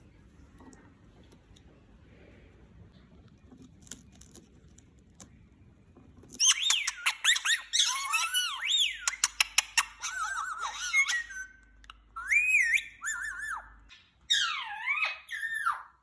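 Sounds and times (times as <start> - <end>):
parakeet squawking and whistling: 6.4 - 16.0.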